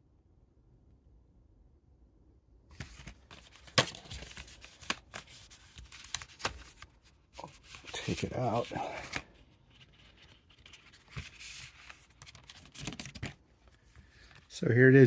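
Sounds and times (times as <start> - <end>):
packaging crinkling and clicking: 2.8 - 13.4.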